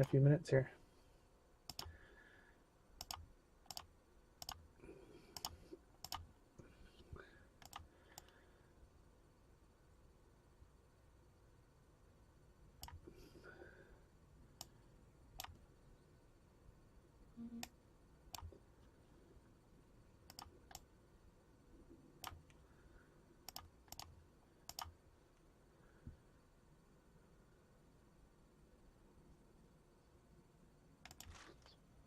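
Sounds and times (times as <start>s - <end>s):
faint sharp clicks: 1.7s - 2.0s, 3.0s - 4.6s, 7.6s - 8.4s, 20.3s - 20.9s, 23.4s - 25.5s, 31.0s - 31.8s.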